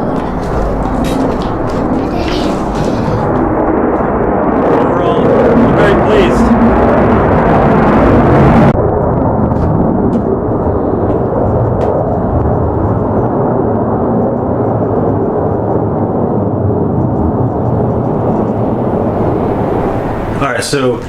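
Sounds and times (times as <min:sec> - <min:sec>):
jet flying overhead: 0:00.0 - 0:21.0.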